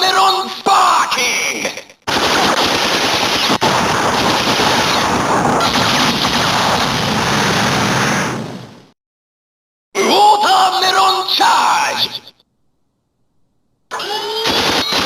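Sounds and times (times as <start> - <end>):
rapid-fire gunfire: 2.1 - 8.2, 14.5 - 15.0.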